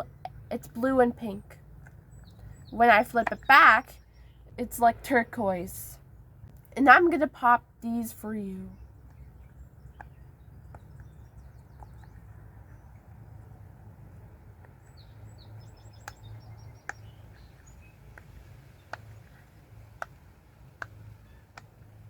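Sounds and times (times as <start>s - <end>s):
birds chirping: 0.0s - 22.0s
low background rumble: 0.0s - 22.0s.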